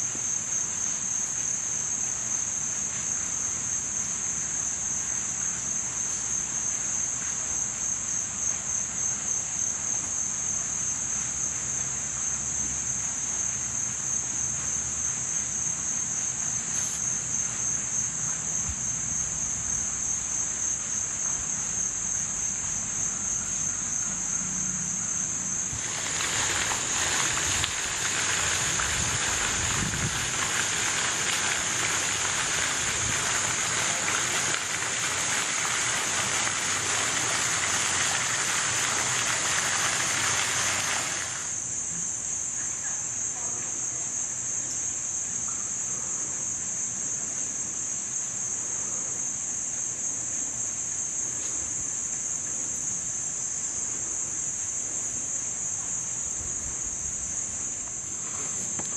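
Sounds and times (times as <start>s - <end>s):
high-pitched insect chorus: 0.0s - 58.9s
broad rushing hiss: 25.6s - 41.6s.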